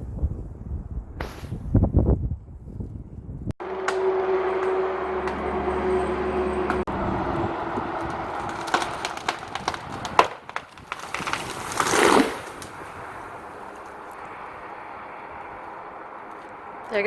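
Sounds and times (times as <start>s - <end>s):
tree crashing through branches: 6.9s - 13.7s
wood cracking and splintering: 7.2s - 13.3s.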